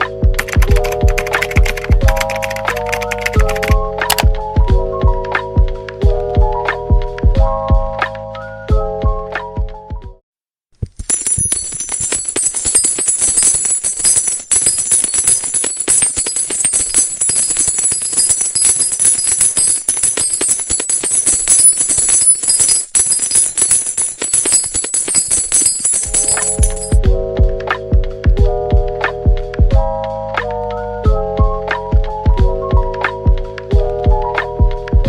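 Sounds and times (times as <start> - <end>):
coins jingling: 0.4 - 4.3, 11.0 - 27.0.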